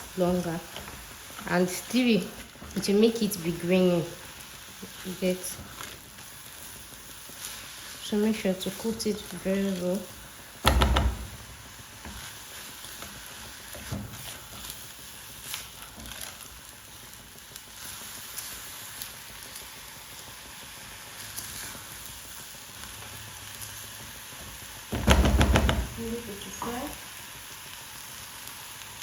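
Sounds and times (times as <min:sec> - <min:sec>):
rice sizzling in oil: 0:00.0 - 0:29.0
thump: 0:10.6 - 0:11.4, 0:24.9 - 0:26.0.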